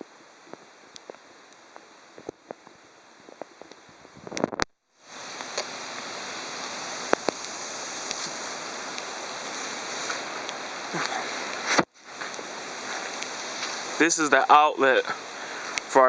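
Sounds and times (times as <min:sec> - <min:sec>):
rainstorm water rushing: 0:05.0 - 0:16.0.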